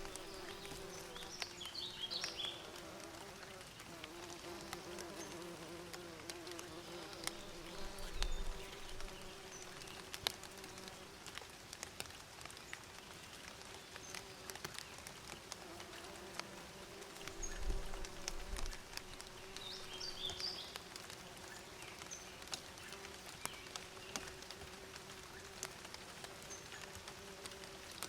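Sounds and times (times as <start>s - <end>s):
bees buzzing: 0.0s - 11.0s, 16.4s - 20.5s
small clicks: 0.0s - 16.5s.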